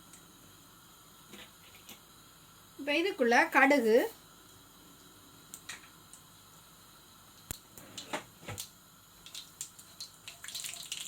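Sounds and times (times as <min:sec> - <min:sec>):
seeds popping in hot oil: 0:04.4 - 0:06.6, 0:07.3 - 0:11.0.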